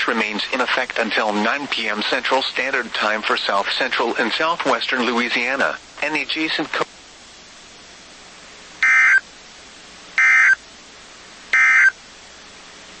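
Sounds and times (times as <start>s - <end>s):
receiver hiss: 0.0s - 13.0s
buzzy two-tone digital data bursts: 8.8s - 9.2s, 10.2s - 10.6s, 11.5s - 12.0s.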